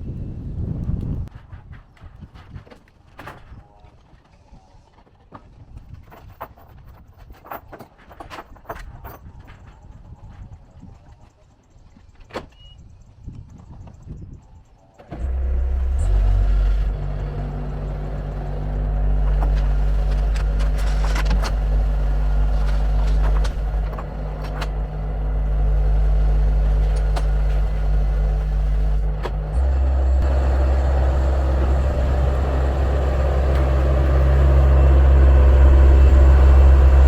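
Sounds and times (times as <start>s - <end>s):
heavy engine running: 13.8s - 37.0s
clicks and knocks: 19.1s - 24.9s.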